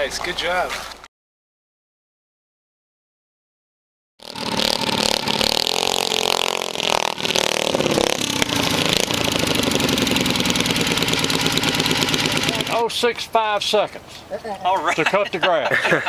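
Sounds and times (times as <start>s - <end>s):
lawnmower engine revving: 4.2s - 12.9s.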